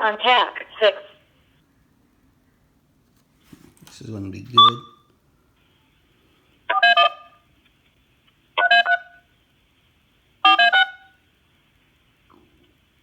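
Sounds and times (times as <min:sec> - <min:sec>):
faint steady hiss: 0:00.0 - 0:06.7, 0:11.1 - 0:13.0.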